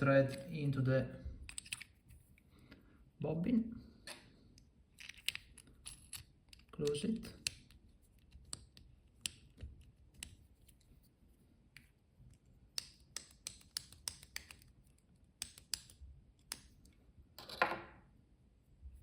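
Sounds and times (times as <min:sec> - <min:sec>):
light clicks and taps of tools: 0:04.1 - 0:10.9, 0:11.7 - 0:17.7.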